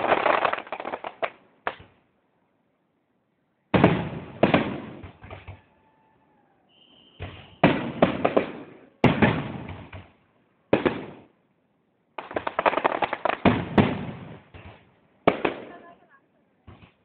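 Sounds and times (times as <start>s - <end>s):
fireworks bangs and crackling: 0.0s - 2.0s, 3.7s - 5.7s, 6.7s - 11.4s, 12.2s - 17.0s.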